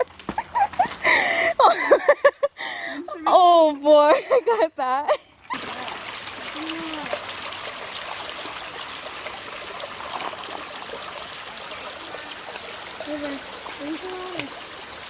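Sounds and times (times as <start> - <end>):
creek running over rocks: 2.9 - 15.0
faint voice: 5.7 - 7.1.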